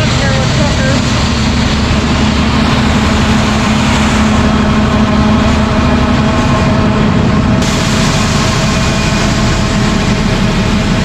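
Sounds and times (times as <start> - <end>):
farm machinery engine drone: 0.0 - 11.0.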